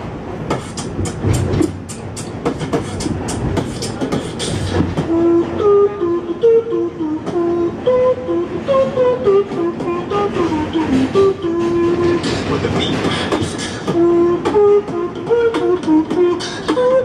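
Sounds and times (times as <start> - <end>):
beatboxing: 0.4 - 17.0
person humming melody: 4.2 - 12.5, 13.8 - 17.0.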